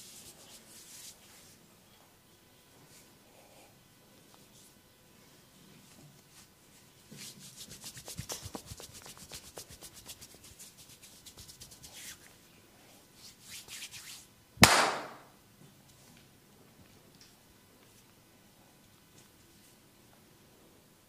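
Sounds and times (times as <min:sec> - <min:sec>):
hands rubbing and patting skin: 0:07.1 - 0:12.4
sharp smack on skin: 0:14.6 - 0:15.2.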